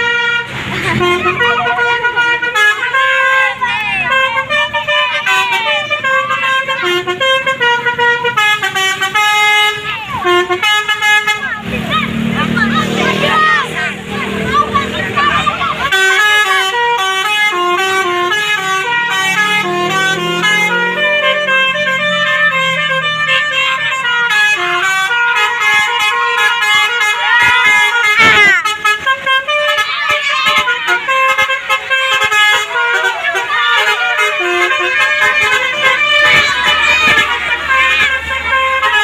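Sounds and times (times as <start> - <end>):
bus melody horn: 0.0 - 39.0.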